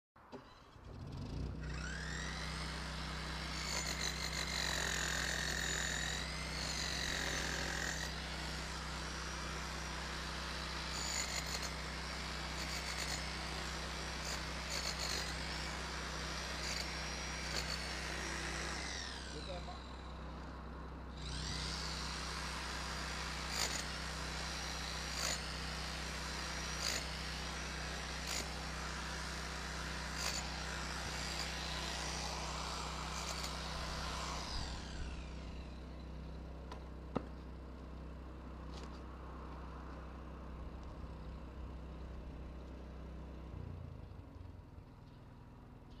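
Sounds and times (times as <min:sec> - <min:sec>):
grinder grinding under load: 0:00.4 - 0:36.4.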